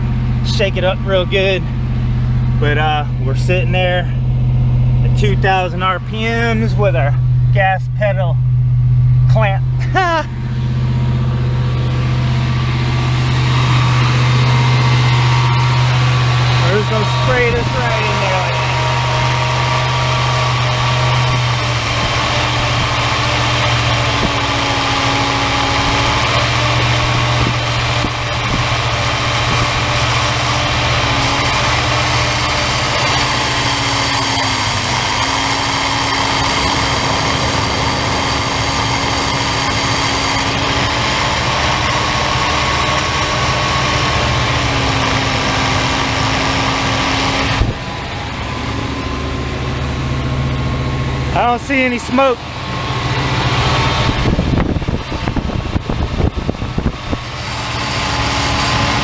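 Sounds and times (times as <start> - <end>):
engine running at fast idle: 0.0 - 59.0.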